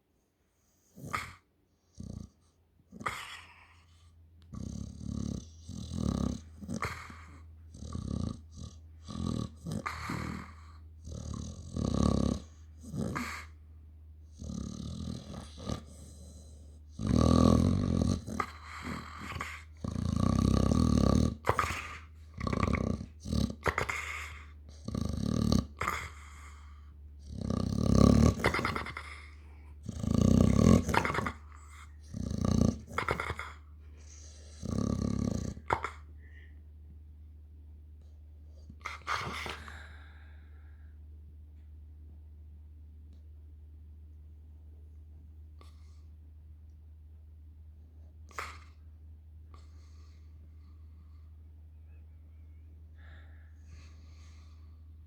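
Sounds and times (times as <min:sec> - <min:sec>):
dog snoring: 0:00.7 - 0:13.6, 0:14.2 - 0:36.6, 0:38.0 - 0:40.8, 0:45.6 - 0:46.1, 0:48.2 - 0:48.9, 0:49.5 - 0:51.3, 0:53.0 - 0:54.9
steady low hum: 0:01.7 - 0:55.0.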